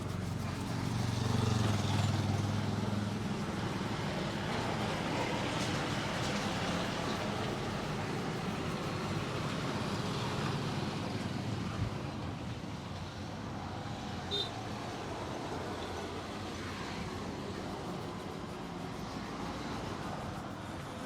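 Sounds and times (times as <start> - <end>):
roadside traffic noise: 0.0 - 21.0.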